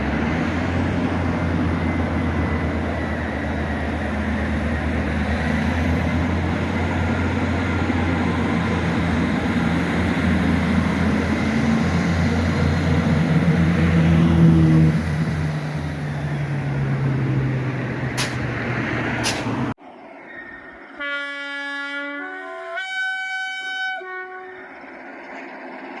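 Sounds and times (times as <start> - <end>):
diesel locomotive engines rumbling: 0.0 - 26.0
locomotive horn blasts: 21.0 - 24.8.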